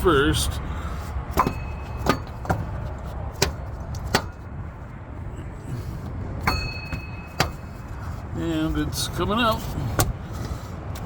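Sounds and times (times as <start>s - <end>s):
low background rumble: 0.0s - 11.0s
hammer striking metal: 1.3s - 2.8s, 3.4s - 4.4s, 6.4s - 8.0s.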